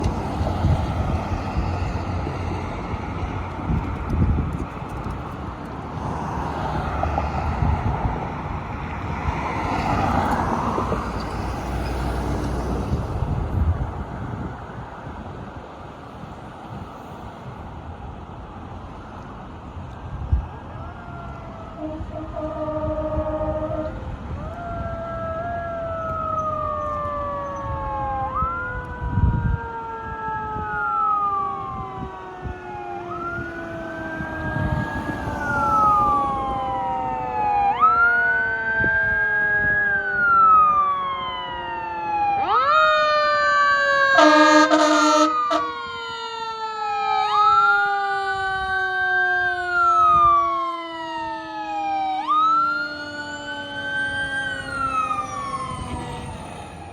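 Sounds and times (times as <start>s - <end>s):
lower siren tone sliding down: 20.4s - 56.9s
siren wailing up and down: 20.5s - 56.9s
air horn blast: 21.8s - 24.0s, 44.2s - 45.7s.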